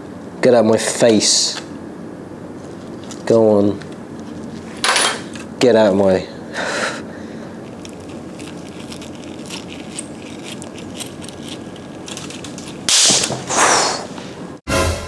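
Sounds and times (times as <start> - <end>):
tools clicking and scraping: 7.8 - 13.4.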